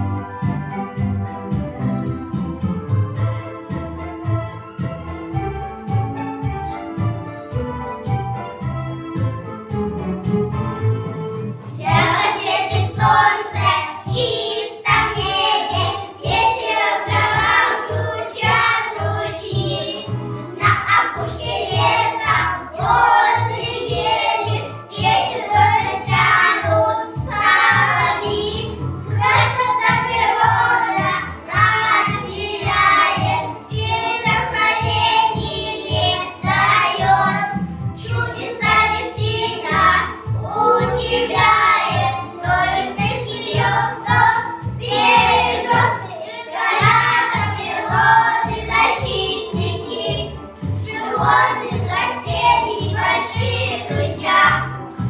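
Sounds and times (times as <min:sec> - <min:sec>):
children singing: 0:11.8 - 0:54.8.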